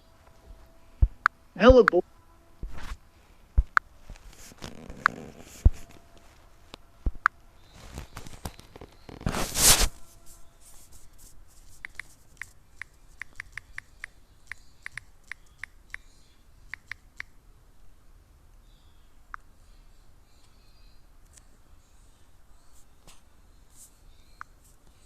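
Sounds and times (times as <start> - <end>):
scraping rustle: 2.6 - 3.4, 4.0 - 6.8, 7.6 - 12.3
small sharp clicks: 11.8 - 16.1, 16.7 - 17.4.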